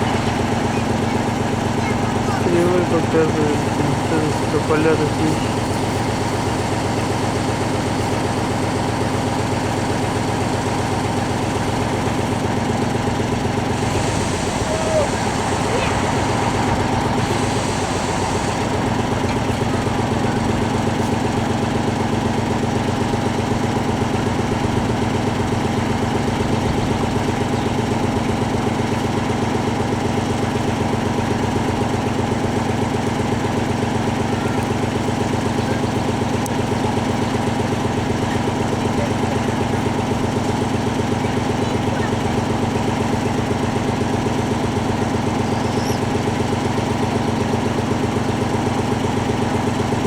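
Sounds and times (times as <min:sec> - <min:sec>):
crane engine idling: 0:00.0 - 0:50.0.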